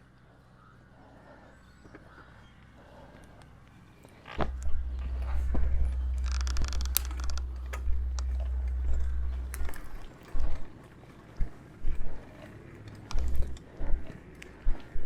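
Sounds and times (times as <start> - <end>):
sharp clicks: 4.4 - 10.6
wind buffeting microphone: 4.4 - 12.4.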